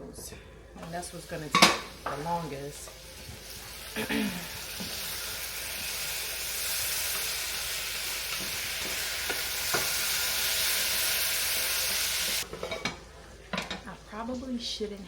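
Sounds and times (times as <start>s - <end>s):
food sizzling in a pan: 0.8s - 12.9s.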